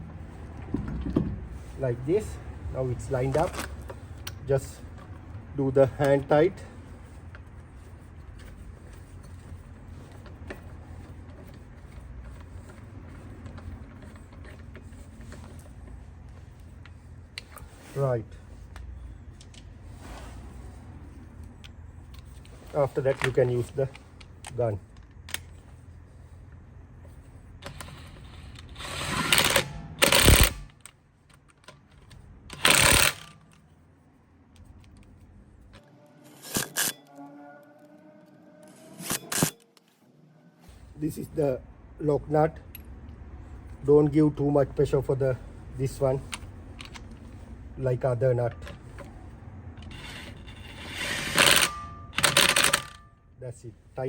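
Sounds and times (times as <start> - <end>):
impact wrench rattling: 32.6 - 33.4, 49.8 - 53.0
metallic clicks of wheel nuts: 49.8 - 53.1.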